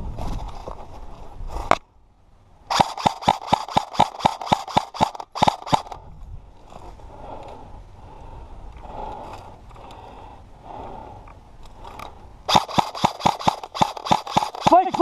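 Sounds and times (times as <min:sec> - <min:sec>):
airsoft rifle shots: 0:02.7 - 0:06.0, 0:12.5 - 0:15.0.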